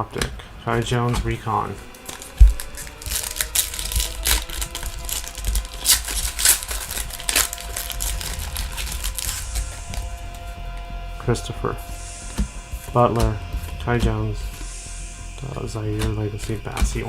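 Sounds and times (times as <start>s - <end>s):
plastic wrapper crinkling: 1.9s - 10.4s.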